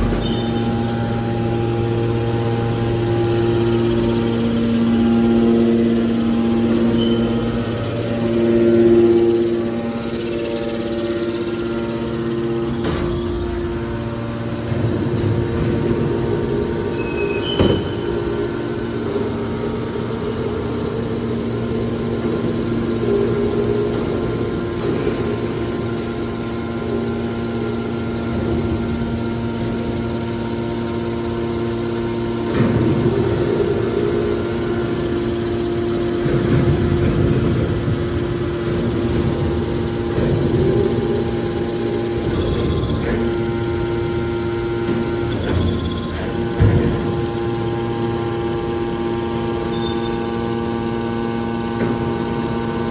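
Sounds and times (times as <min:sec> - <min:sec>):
baler pump motor hum: 0:00.0 - 0:52.9
rough machine noise: 0:00.0 - 0:52.9.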